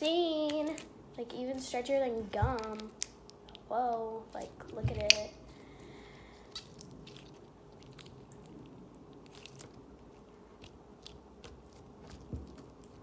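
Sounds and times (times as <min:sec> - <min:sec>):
slime crackling by hand: 0:06.4 - 0:13.0.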